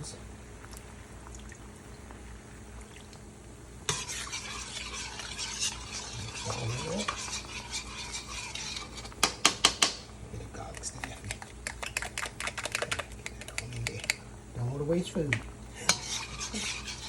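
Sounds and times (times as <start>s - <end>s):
spoon stirring: 3.9s - 14.2s, 15.0s - 17.0s.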